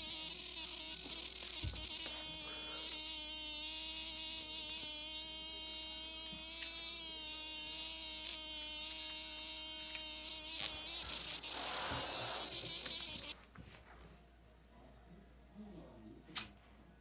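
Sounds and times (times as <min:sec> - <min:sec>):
steady electrical buzz: 0:00.0 - 0:13.4.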